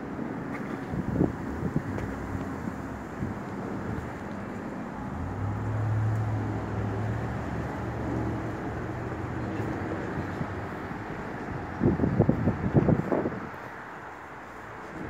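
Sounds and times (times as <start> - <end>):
wind on microphone: 0.6 - 4.5, 7.0 - 13.9.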